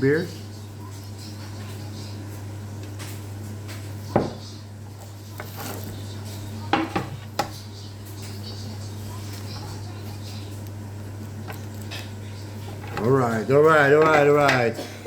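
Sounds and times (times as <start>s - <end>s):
hard objects knocking on tabletop: 4.1s - 4.4s.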